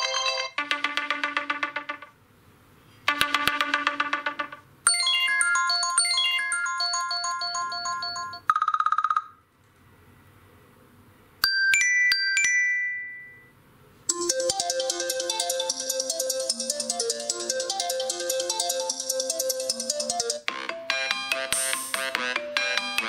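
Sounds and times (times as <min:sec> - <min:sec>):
electronic ringtone notes: 0:00.0 - 0:02.1, 0:03.1 - 0:09.3, 0:14.1 - 0:23.0.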